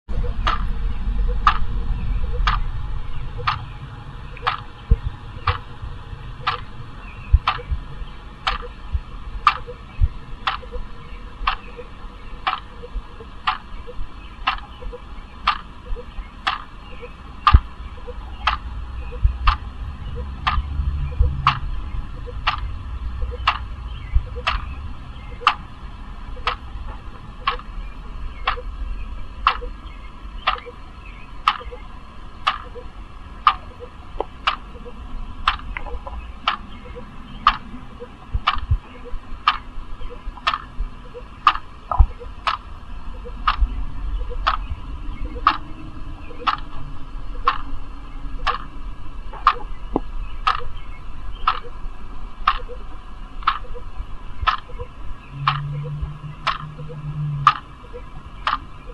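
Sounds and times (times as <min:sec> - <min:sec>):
low background rumble: 0:00.1 - 0:58.9
clock ticking: 0:00.2 - 0:00.7, 0:01.3 - 0:02.6, 0:03.3 - 0:03.6, 0:04.3 - 0:05.7, 0:06.4 - 0:06.7, 0:07.3 - 0:07.8, 0:08.4 - 0:08.8, 0:09.4 - 0:21.6, 0:22.2 - 0:24.7, 0:25.3 - 0:25.6, 0:26.4 - 0:26.7, 0:27.4 - 0:27.7, 0:28.4 - 0:28.7, 0:29.4 - 0:29.8, 0:30.4 - 0:30.8, 0:31.4 - 0:31.8, 0:32.4 - 0:44.6, 0:45.2 - 0:45.7, 0:46.3 - 0:46.7, 0:47.4 - 0:47.7, 0:48.4 - 0:48.7, 0:49.4 - 0:49.7, 0:50.4 - 0:50.7, 0:51.4 - 0:51.8, 0:52.4 - 0:52.8, 0:53.4 - 0:58.9.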